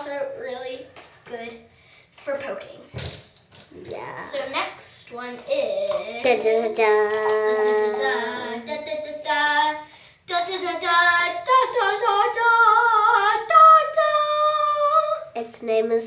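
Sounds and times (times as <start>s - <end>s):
girl singing da da da fanfare: 5.6s - 15.4s.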